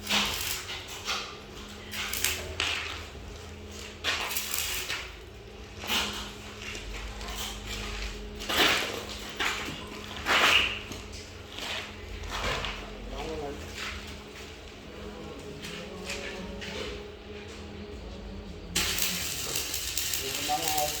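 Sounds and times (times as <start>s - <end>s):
welding arc crackle: 0.0s - 11.2s, 18.8s - 21.0s
low electrical hum: 0.0s - 21.0s.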